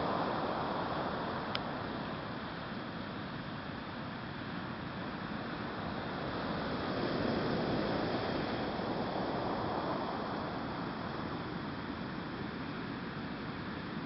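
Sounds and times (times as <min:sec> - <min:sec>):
ocean waves washing on shore: 0:00.0 - 0:14.0.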